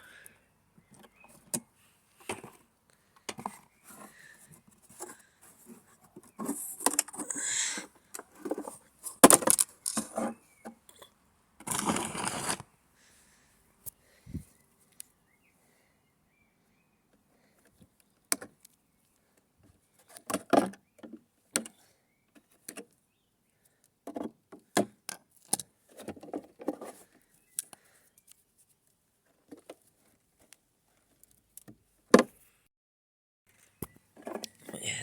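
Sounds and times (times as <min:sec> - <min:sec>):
small plastic parts clicking and rattling: 0:08.1 - 0:10.3, 0:24.0 - 0:28.4.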